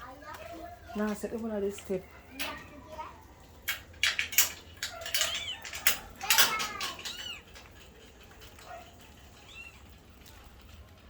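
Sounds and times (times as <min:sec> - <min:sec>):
sharp clicks and knocks: 0:03.6 - 0:09.1
kittens mewing: 0:04.6 - 0:10.6.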